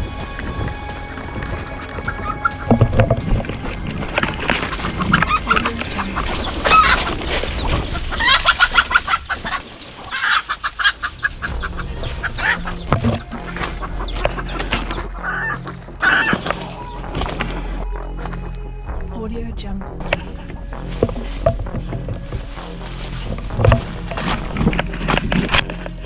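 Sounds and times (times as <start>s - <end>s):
birds chirping: 0.0s - 26.0s.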